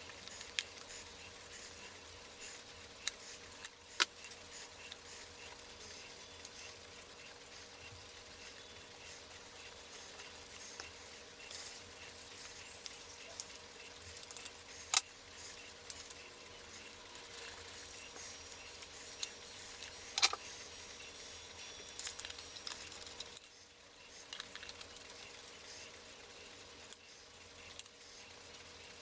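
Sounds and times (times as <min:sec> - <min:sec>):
faint steady hum: 0:00.0 - 0:29.0
metallic clicks of clock parts: 0:17.2 - 0:20.5.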